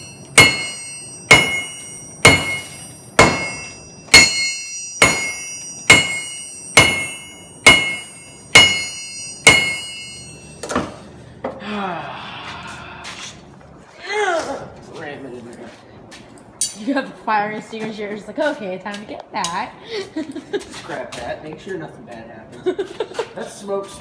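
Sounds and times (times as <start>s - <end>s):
hammer striking metal on anvil: 0.0s - 11.0s.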